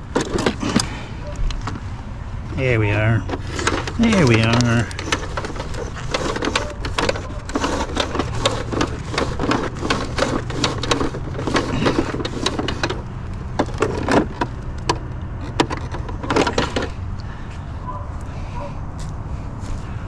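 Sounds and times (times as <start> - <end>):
rapid clattering and knocking: 0.0 - 0.9, 2.9 - 17.0
low engine hum: 0.0 - 20.0.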